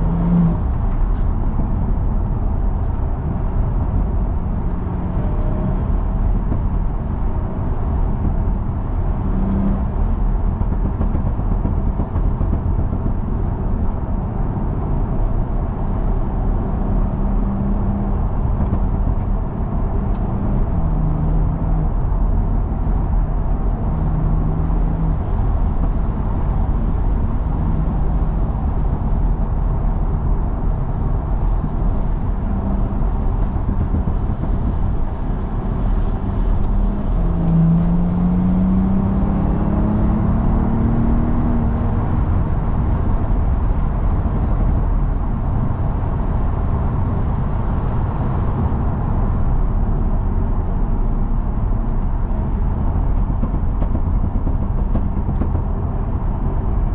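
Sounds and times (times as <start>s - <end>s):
car engine cruising: 0.0s - 56.9s
road and tyre noise: 0.0s - 56.9s.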